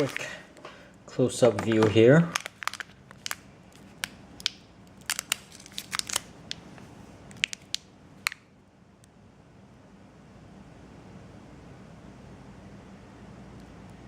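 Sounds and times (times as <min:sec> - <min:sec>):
small plastic items clicking: 0:01.4 - 0:03.4.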